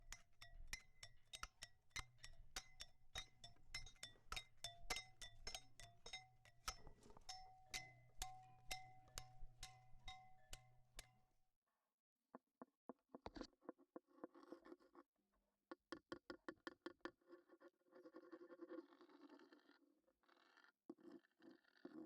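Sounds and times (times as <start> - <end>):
sharp ringing taps: 0.0 - 11.2.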